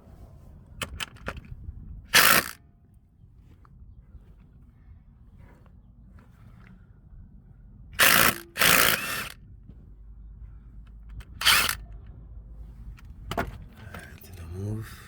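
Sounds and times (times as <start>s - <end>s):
power tool bursts: 2.2s - 2.6s, 8.0s - 9.4s, 11.4s - 11.8s.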